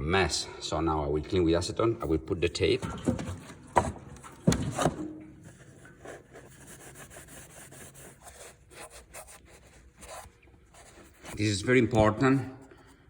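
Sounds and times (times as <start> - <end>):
sharp knocks: 2.8 - 5.3
rubbing strokes on a hard surface: 5.4 - 11.8.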